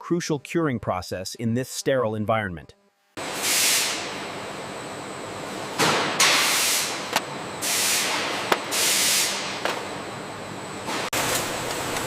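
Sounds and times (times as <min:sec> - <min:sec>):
factory machinery hissing: 0:03.2 - 0:04.4, 0:05.9 - 0:09.7
bursts of air hissing: 0:03.3 - 0:04.2, 0:06.2 - 0:09.6.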